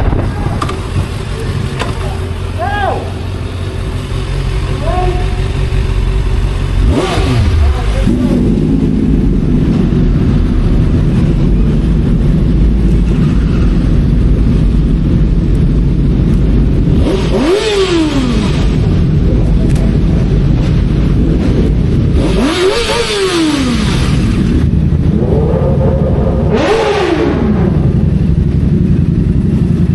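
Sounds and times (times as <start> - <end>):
wind noise: 0.0 - 1.6, 8.3 - 29.4
motorcycle engine rumble and revving: 0.0 - 29.9.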